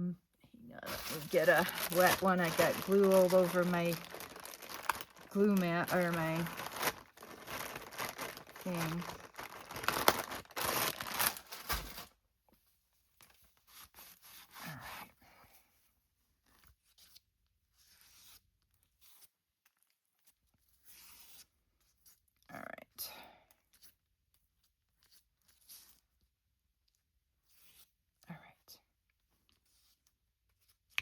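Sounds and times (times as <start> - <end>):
wet wipe crinkling and rubbing: 0.8 - 12.1.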